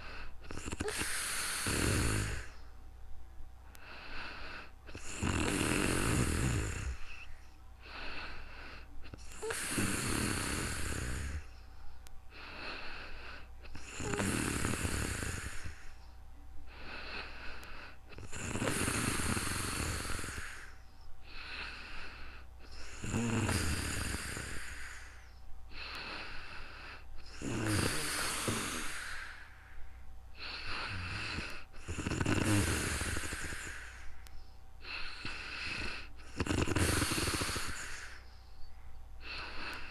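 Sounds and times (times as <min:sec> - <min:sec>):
person snoring: 0:00.0 - 0:02.6, 0:03.8 - 0:07.3, 0:07.9 - 0:11.5, 0:12.4 - 0:16.0, 0:16.8 - 0:25.2, 0:25.8 - 0:29.5, 0:30.4 - 0:34.2, 0:34.8 - 0:38.2, 0:39.2 - 0:39.9.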